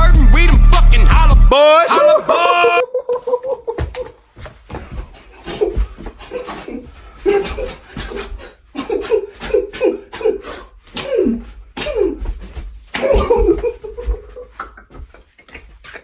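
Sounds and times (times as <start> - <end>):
man laughing breathlessly: 2.0 - 4.1, 5.3 - 9.7, 13.1 - 14.8
heavy breathing: 4.7 - 12.7.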